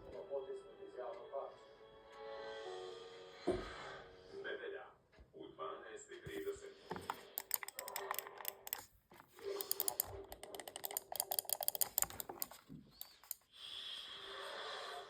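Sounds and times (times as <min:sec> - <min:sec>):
computer mouse clicking: 0:06.9 - 0:13.5.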